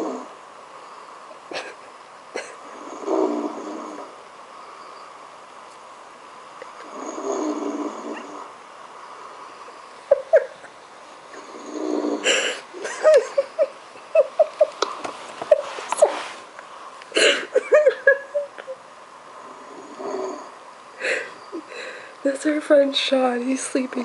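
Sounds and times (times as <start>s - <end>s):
man snoring: 0.0s - 0.4s, 2.7s - 4.2s, 6.8s - 8.5s, 11.3s - 12.8s, 19.4s - 20.6s.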